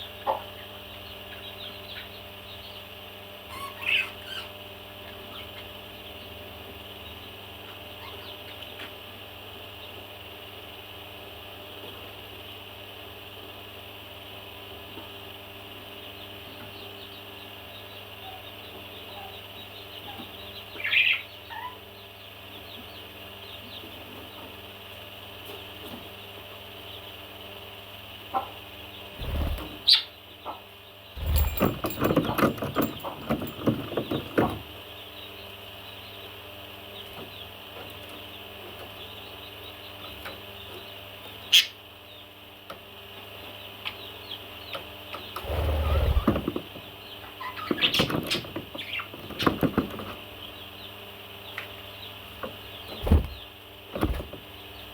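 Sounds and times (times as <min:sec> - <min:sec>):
steady background hum: 0:00.0 - 0:54.9
parrot chirping: 0:03.5 - 0:04.5.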